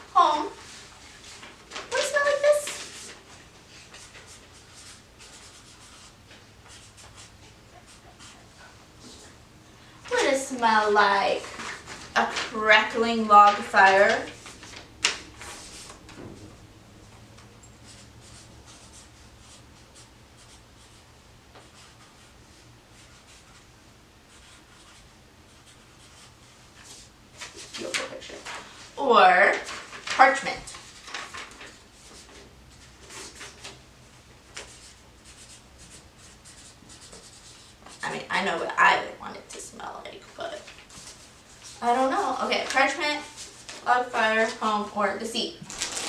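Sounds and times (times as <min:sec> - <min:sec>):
pen scratching on paper: 0:04.0 - 0:06.1, 0:06.7 - 0:08.6, 0:24.3 - 0:27.0, 0:34.6 - 0:38.0
pen writing on paper: 0:07.8 - 0:08.4.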